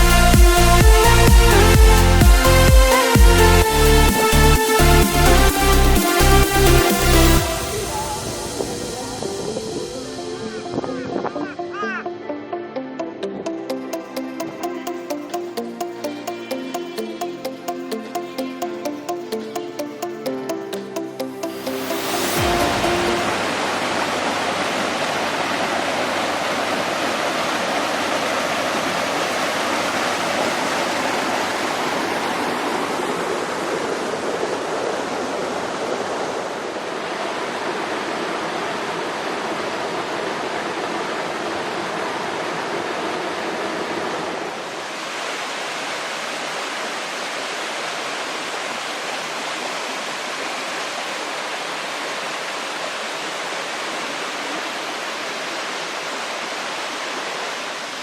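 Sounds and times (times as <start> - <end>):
stream rushing over rocks: 0.0 - 9.9, 21.4 - 58.0.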